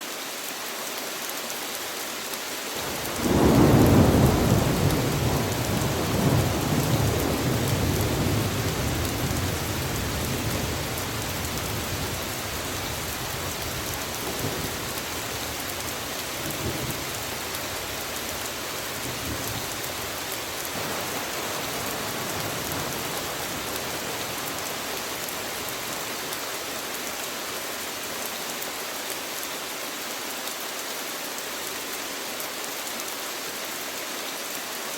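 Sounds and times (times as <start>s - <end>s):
steady rain falling: 0.0s - 34.9s
thunder clap rumbling: 2.9s - 20.1s, 20.7s - 26.1s.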